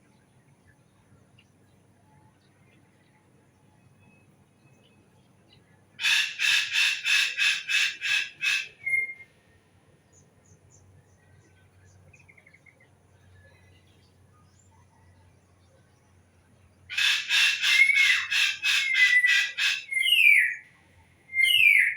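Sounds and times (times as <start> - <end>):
harsh bird call: 6.0 - 9.2, 16.9 - 20.6, 21.3 - 21.9
small birds chirping: 10.0 - 21.9.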